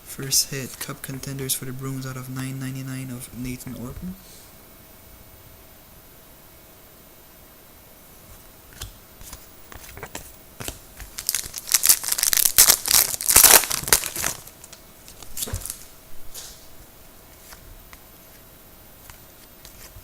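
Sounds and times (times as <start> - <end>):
wrapper crinkling and tearing: 11.0 - 15.9.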